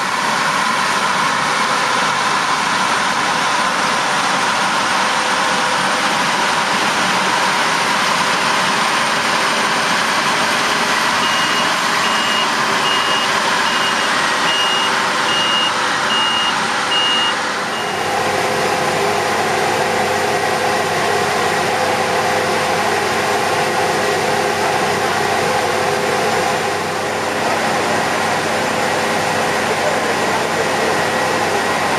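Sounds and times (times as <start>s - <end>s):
combine harvester engine running: 0.0s - 31.9s
reversing alarm beeping: 11.2s - 18.2s.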